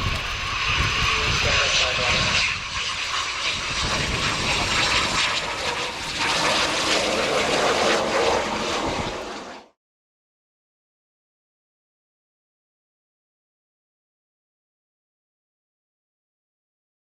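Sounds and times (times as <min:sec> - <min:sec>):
jet aircraft flying past: 0:00.0 - 0:09.8.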